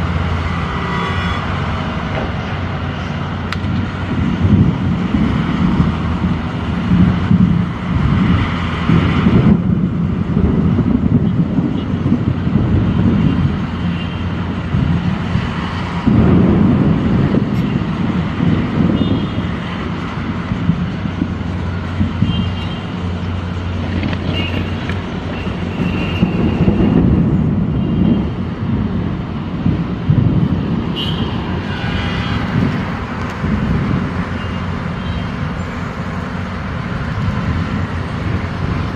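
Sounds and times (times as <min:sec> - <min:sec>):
traffic rumble: 0:00.0 - 0:38.9.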